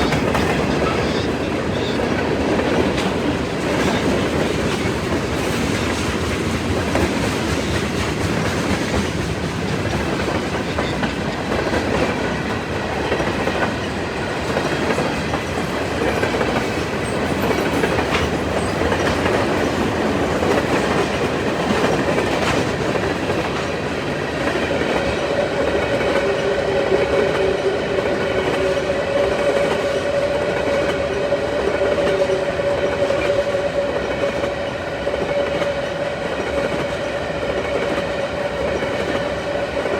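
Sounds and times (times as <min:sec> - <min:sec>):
wheels clacking over rail joints: 0:00.0 - 0:26.5
freight train rumble: 0:00.0 - 0:39.9.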